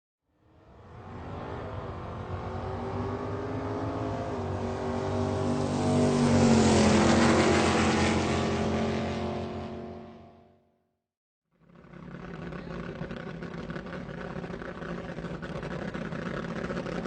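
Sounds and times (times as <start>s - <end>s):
sports car driving past: 0.4s - 10.6s.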